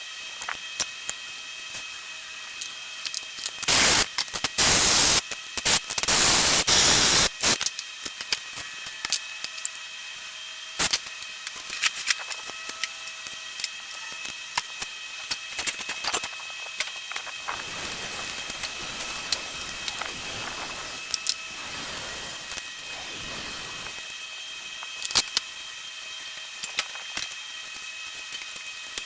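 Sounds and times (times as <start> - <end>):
loud hissing bursts: 3.7 - 7.6, 17.5 - 24.1.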